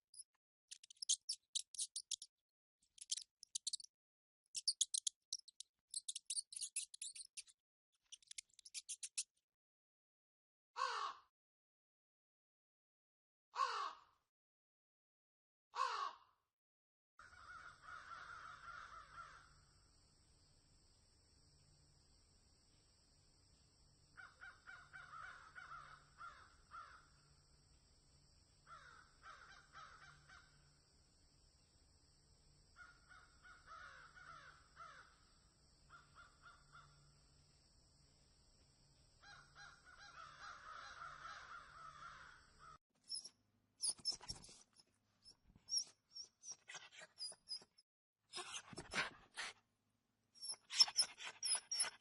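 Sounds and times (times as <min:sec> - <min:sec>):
crows cawing: 0:10.8 - 0:11.2, 0:13.6 - 0:14.1, 0:15.8 - 0:16.3, 0:17.2 - 0:19.5, 0:24.2 - 0:27.1, 0:28.7 - 0:30.5, 0:32.8 - 0:35.2, 0:39.2 - 0:42.8.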